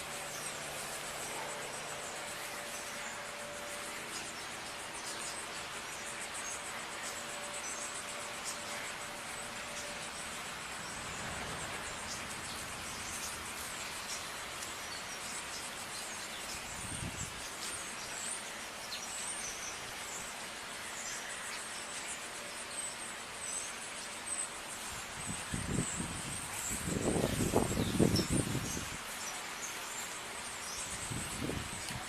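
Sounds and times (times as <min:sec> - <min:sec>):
steady hiss: 0:00.0 - 0:32.0.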